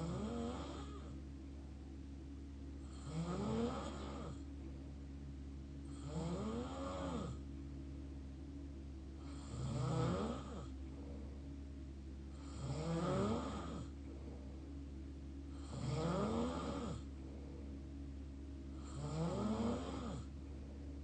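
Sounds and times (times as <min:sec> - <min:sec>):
person snoring: 0:00.0 - 0:01.2, 0:02.8 - 0:04.4, 0:05.8 - 0:07.4, 0:09.2 - 0:11.3, 0:12.3 - 0:14.5, 0:15.5 - 0:17.5, 0:18.8 - 0:20.3.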